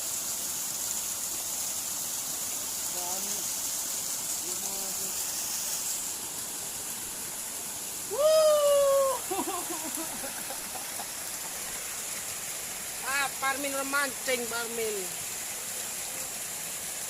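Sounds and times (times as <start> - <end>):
water rushing in a ditch: 0.0 - 17.0.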